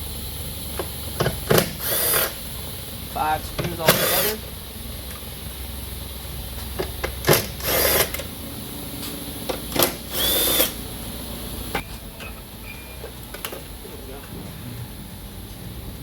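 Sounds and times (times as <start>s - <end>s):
cordless power driver whirring: 0.8s - 2.4s, 3.9s - 4.4s, 7.0s - 8.4s, 9.4s - 10.9s.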